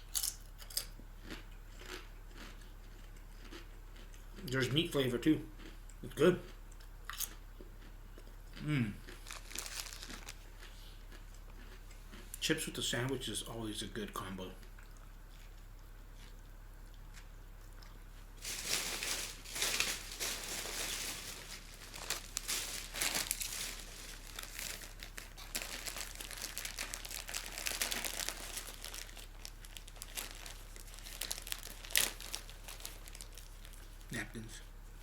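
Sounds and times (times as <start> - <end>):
plastic packaging crinkling: 9.1 - 10.5, 18.4 - 34.2.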